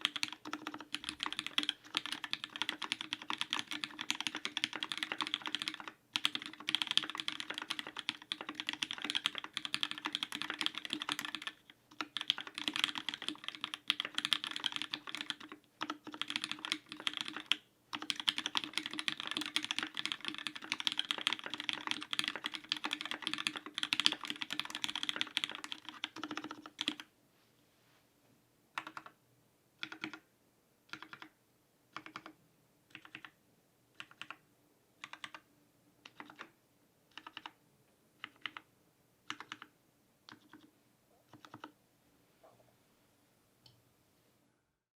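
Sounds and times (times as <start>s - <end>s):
mechanical keyboard typing: 0.0s - 27.1s, 28.8s - 29.2s, 29.8s - 30.2s, 30.9s - 31.3s, 31.9s - 33.4s, 34.0s - 34.4s, 35.0s - 35.4s, 36.0s - 36.5s, 37.1s - 37.6s, 38.2s - 38.7s, 39.3s - 39.7s, 40.3s - 40.7s, 41.3s - 41.8s.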